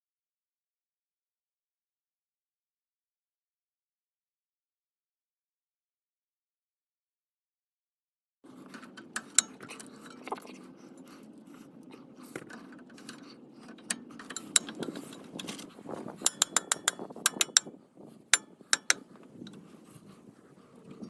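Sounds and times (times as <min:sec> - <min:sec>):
steady low hum: 0:08.5 - 0:21.0
tools scraping brake parts: 0:08.5 - 0:21.0
metallic clinks of tools: 0:12.4 - 0:17.8, 0:18.4 - 0:19.6.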